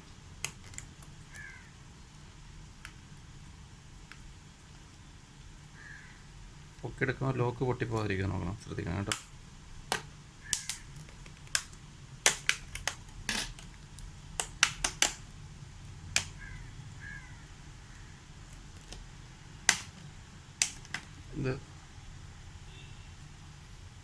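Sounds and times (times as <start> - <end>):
plastic clicks and snaps: 9.0 - 9.3, 9.9 - 15.2, 16.1 - 16.4, 18.5 - 21.2.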